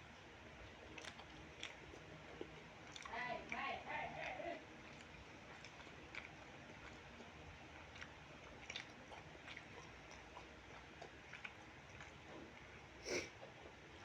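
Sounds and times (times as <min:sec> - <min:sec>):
person chewing food: 0:00.0 - 0:14.0
mouth clicks and smacks: 0:00.9 - 0:03.6.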